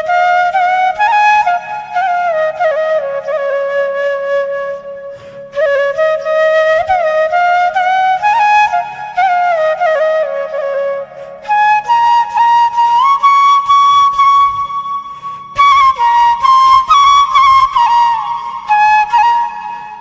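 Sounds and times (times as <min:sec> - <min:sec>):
flute playing slow melody: 0:00.0 - 0:20.0.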